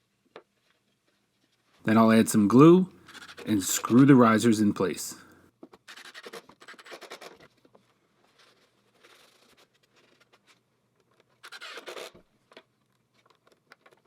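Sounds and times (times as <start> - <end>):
faint scratching: 1.4 - 5.4.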